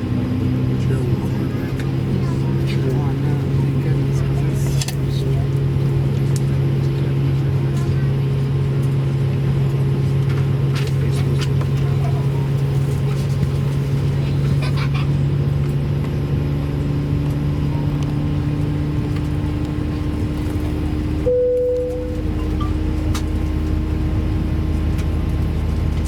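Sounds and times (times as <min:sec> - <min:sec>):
aircraft cabin engine drone: 0:00.0 - 0:26.0
higher tone: 0:21.2 - 0:22.9.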